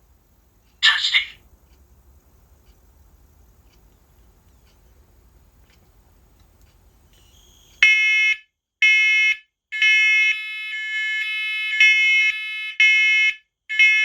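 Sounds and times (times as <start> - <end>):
smoke alarms beeping: 7.1 - 8.0.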